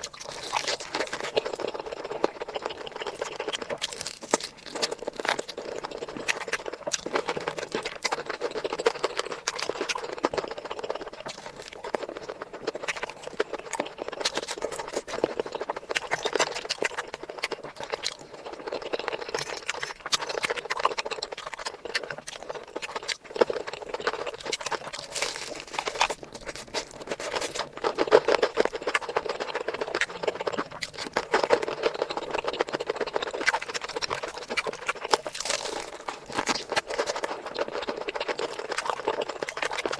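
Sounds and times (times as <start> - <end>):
chewing and mouth smacking: 0.0 - 39.9
crunchy clicks: 23.1 - 39.9.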